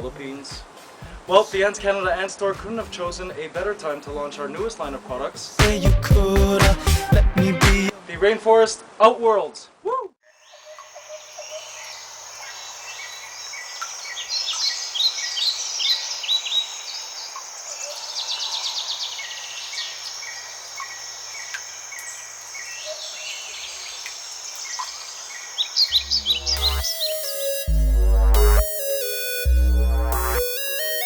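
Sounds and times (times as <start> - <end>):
bird chirps and calls: 10.5 - 27.4
bird trill: 25.6 - 29.6.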